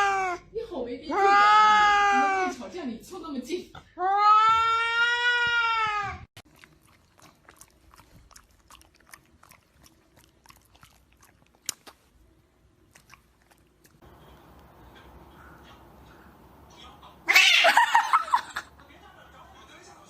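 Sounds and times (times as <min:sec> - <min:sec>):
cat meowing: 0:17.2 - 0:17.9.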